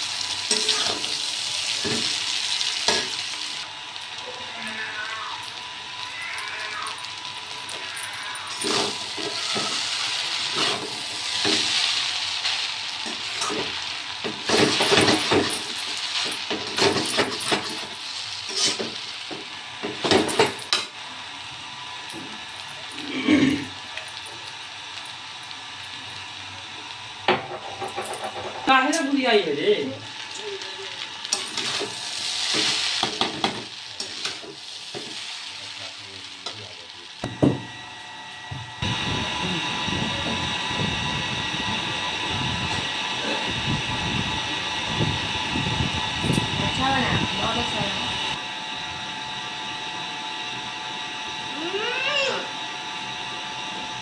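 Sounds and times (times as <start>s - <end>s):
food sizzling in a pan: 0.0s - 42.0s
utensil scraping against pan: 8.6s - 15.2s, 18.5s - 19.0s.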